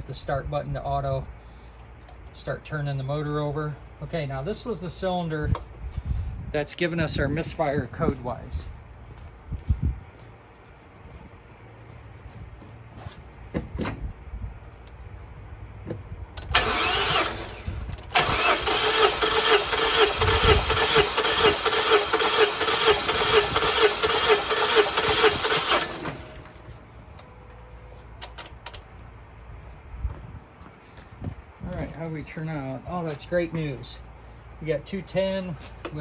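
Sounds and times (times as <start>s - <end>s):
engine cranking by starter: 16.4s - 26.7s.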